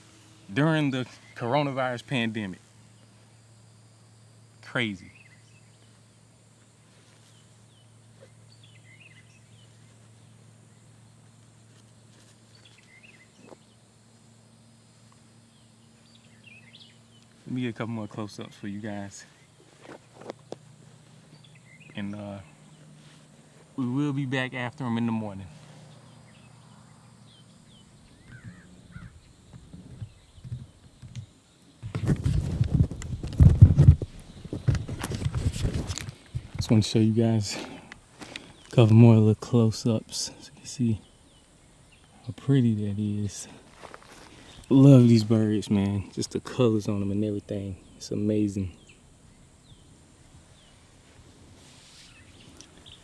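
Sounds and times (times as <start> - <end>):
low steady hum: 0.0 - 53.0
small birds chirping: 0.0 - 53.0
camera handling rustling: 31.9 - 36.7.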